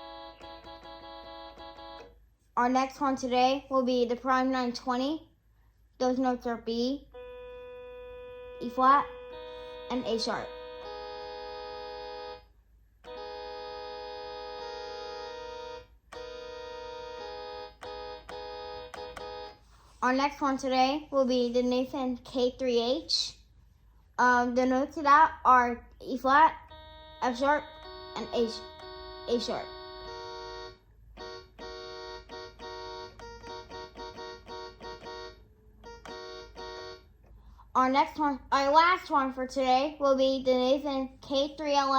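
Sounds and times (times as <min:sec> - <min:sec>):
keyboard chord imitating train horn: 0:00.0 - 0:02.2, 0:07.1 - 0:19.6, 0:26.6 - 0:37.2.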